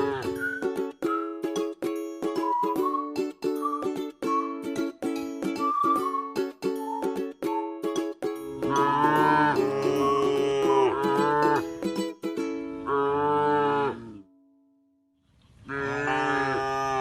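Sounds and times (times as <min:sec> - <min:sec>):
plucked string music: 0:00.0 - 0:13.0
cow mooing: 0:08.6 - 0:11.6, 0:12.8 - 0:14.3, 0:15.7 - 0:17.0.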